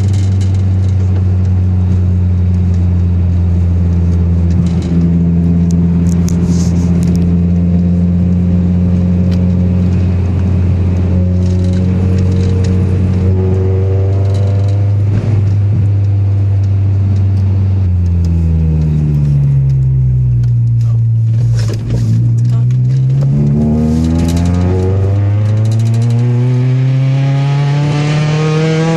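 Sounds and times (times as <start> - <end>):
car engine misfiring: 9.2 - 26.6.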